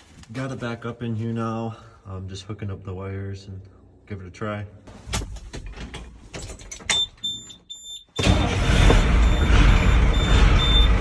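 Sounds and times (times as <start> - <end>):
high warning chime beeping: 6.9 - 11.0
truck engine running: 8.2 - 11.0.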